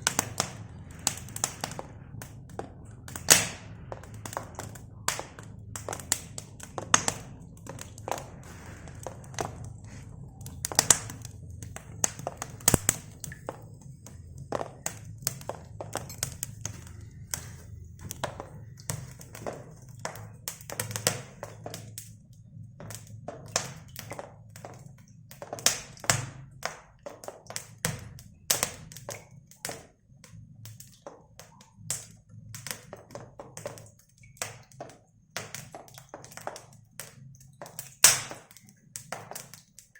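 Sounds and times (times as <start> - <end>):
steady low hum: 0.0 - 24.3.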